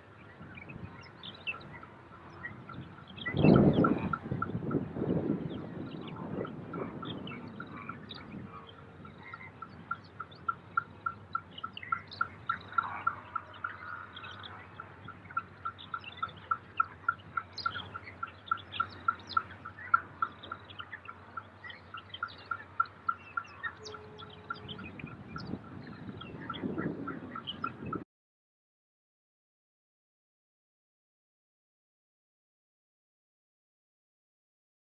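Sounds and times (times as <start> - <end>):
scattered bird chirps: 0.3 - 28.0.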